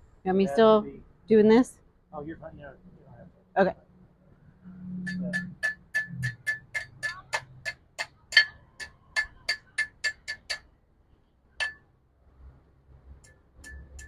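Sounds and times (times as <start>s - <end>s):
hammer striking steel on anvil: 5.0s - 10.7s, 11.6s - 11.8s, 13.6s - 14.0s.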